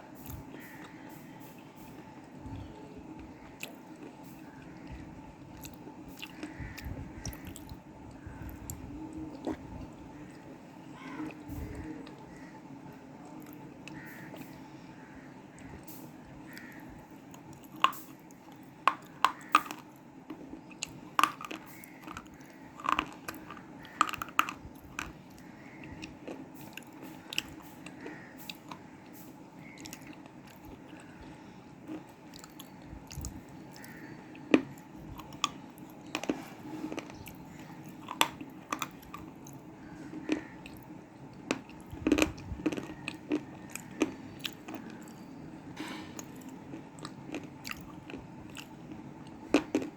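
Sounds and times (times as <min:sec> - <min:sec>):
chewing: 0:01.8 - 0:10.5, 0:13.2 - 0:49.9.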